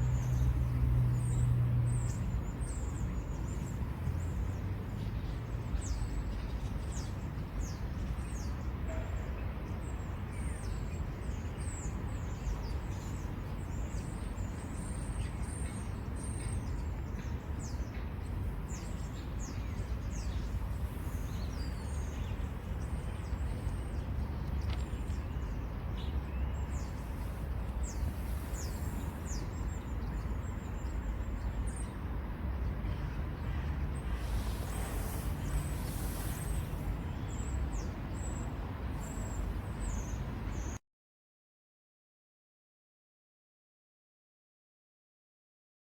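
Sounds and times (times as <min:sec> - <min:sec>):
small birds chirping: 0:18.6 - 0:32.0, 0:33.4 - 0:40.8.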